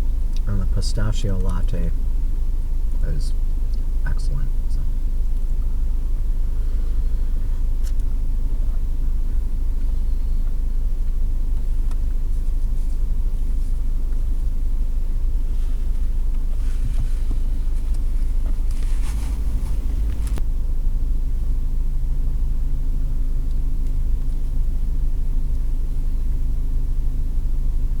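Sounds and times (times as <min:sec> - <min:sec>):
car cabin rumble: 0:00.0 - 0:20.6
brief rustles: 0:15.9 - 0:20.4.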